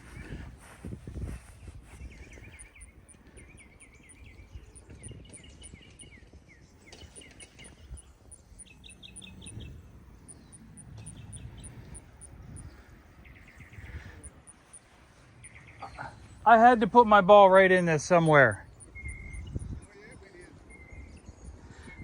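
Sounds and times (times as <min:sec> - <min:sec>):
bird chirping: 0:00.0 - 0:22.0
insects chirping: 0:02.1 - 0:05.3, 0:06.8 - 0:21.1.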